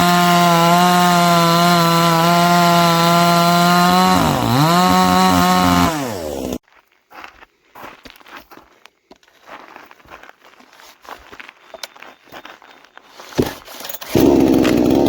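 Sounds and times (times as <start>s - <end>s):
chainsaw running at high revs: 0.0s - 6.6s, 14.1s - 15.0s.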